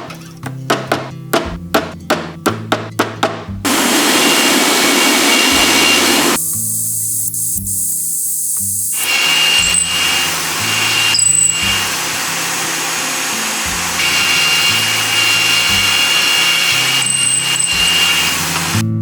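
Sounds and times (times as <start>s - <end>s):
background music: 0.0s - 3.7s, 9.4s - 19.0s
power tool whining: 3.7s - 7.7s, 8.4s - 18.9s.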